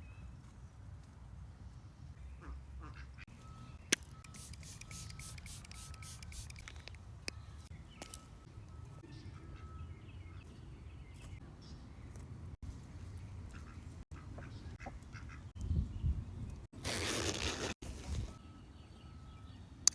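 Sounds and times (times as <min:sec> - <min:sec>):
sharp clicks and rustles: 0:03.9 - 0:07.1.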